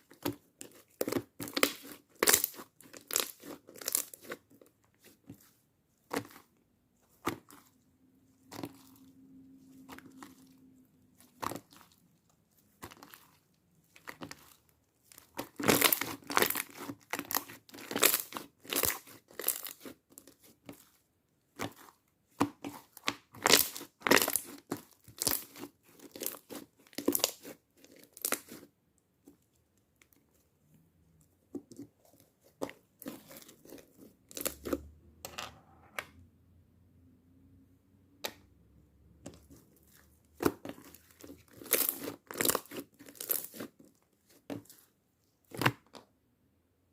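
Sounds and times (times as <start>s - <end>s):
slime crackling and popping: 0.2s - 5.1s, 12.8s - 20.8s, 21.6s - 28.6s, 40.4s - 43.8s.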